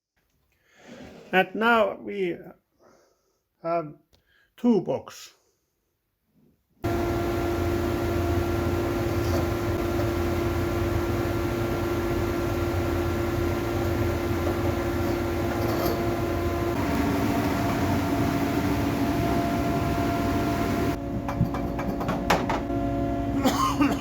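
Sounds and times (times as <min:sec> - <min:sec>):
woodworking machine humming: 0:06.8 - 0:24.0.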